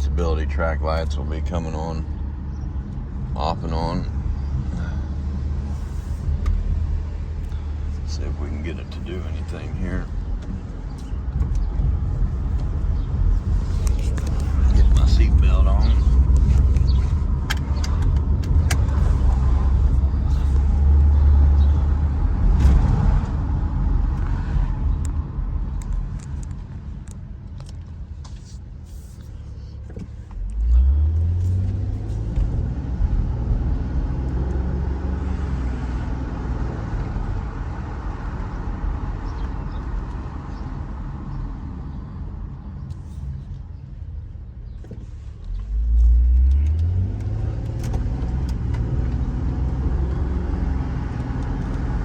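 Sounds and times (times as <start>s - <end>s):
car engine accelerating: 0.0s - 28.5s, 29.6s - 41.9s, 44.8s - 52.0s
road noise: 0.0s - 52.0s.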